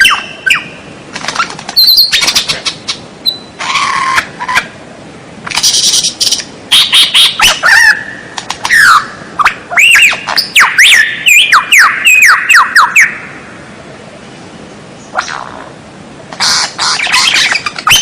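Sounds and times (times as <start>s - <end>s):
bird singing whistled notes: 0.0s - 0.8s, 1.8s - 2.6s, 3.2s - 3.6s, 9.7s - 13.2s.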